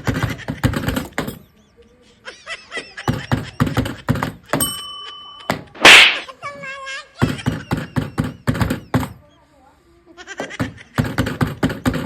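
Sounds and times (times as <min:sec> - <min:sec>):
bell ding: 0:04.6 - 0:05.8
short sharp smack: 0:05.8 - 0:06.3.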